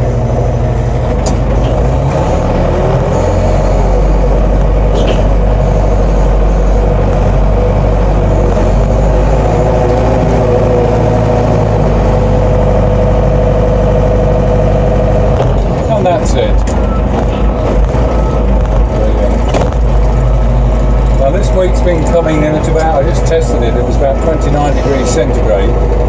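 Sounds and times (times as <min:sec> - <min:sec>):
loader engine working hard: 0:00.0 - 0:26.0.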